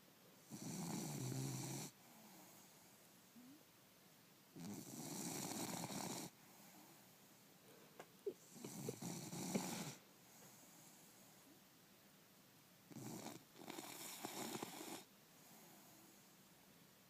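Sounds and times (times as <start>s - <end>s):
dog snoring: 0.5s - 2.7s, 4.6s - 6.7s, 8.4s - 10.0s, 12.9s - 15.7s.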